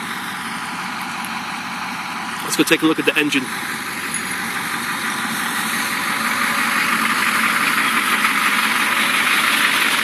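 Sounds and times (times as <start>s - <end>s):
diesel bus engine idling: 0.0s - 10.0s.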